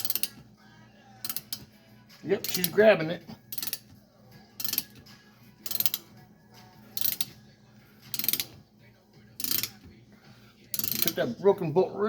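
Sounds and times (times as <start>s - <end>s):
ratchet clicking: 0.0s - 0.4s, 1.2s - 1.7s, 2.4s - 2.8s, 3.5s - 3.9s, 4.6s - 5.0s, 5.6s - 6.2s, 6.9s - 7.4s, 8.1s - 8.6s, 9.4s - 9.9s, 10.7s - 11.2s.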